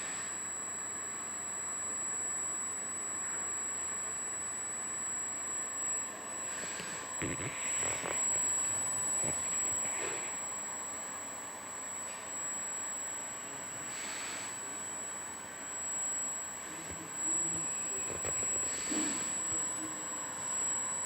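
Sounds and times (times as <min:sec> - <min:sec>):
servo motor high-pitched whine: 0:06.5 - 0:10.4.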